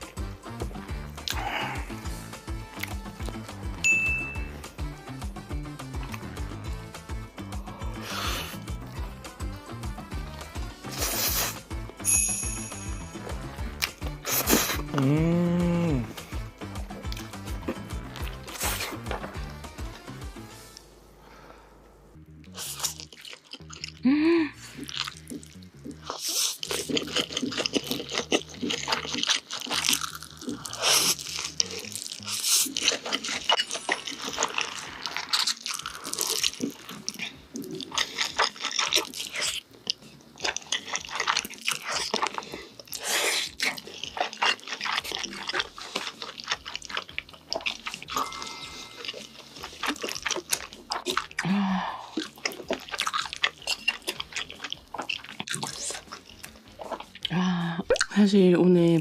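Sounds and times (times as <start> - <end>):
person chewing noodles: 0.0 - 3.8, 4.4 - 12.0, 13.1 - 19.9, 22.2 - 58.1
person humming: 1.2 - 2.1, 14.2 - 16.5, 24.0 - 24.7, 51.4 - 52.2, 57.3 - 57.9.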